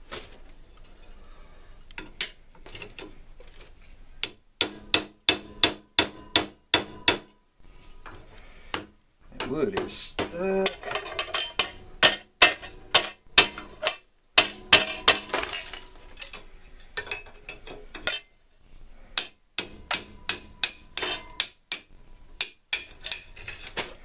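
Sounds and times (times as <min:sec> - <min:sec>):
wood breaking: 0:10.6 - 0:16.4.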